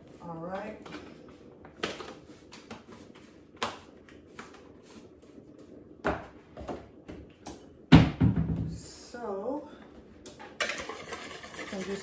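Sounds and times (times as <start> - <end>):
kitchen utensils clattering: 10.6 - 12.0.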